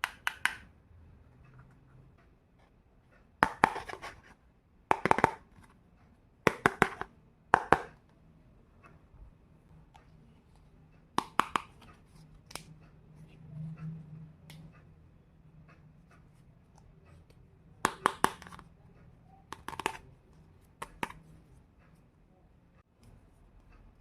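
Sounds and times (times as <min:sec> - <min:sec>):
toy pieces clicking and tapping: 0:17.9 - 0:18.8, 0:19.5 - 0:20.1, 0:20.8 - 0:21.2.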